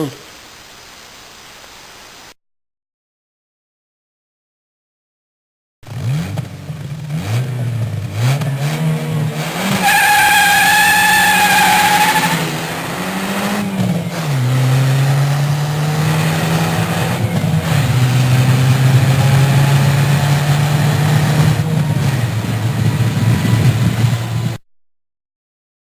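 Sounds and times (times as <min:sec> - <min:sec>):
car engine at high revs: 0:05.8 - 0:24.6
tire squeal: 0:09.6 - 0:13.0.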